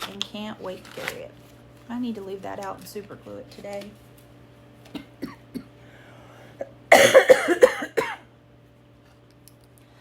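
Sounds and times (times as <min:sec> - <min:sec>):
woman coughing: 0:04.9 - 0:05.8, 0:06.6 - 0:08.3.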